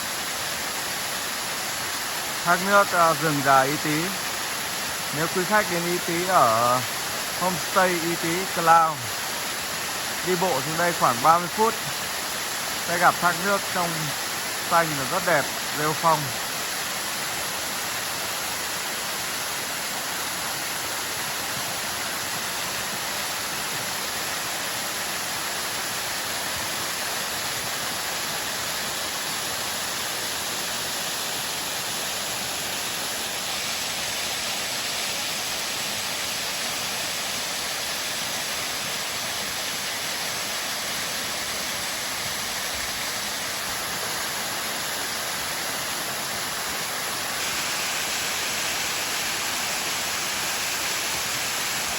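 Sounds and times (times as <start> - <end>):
waterfall rushing: 0.0 - 51.9.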